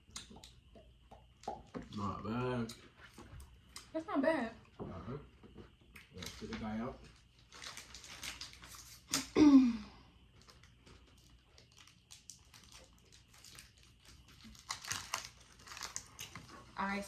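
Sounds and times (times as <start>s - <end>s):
plastic packaging crinkling: 6.1s - 9.3s, 10.3s - 16.5s.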